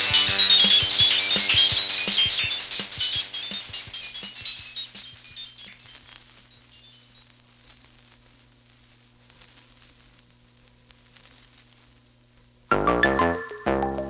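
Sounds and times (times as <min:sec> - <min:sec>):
music track: 0:00.0 - 0:06.2, 0:12.7 - 0:14.0
record crackle and hiss: 0:00.0 - 0:14.0.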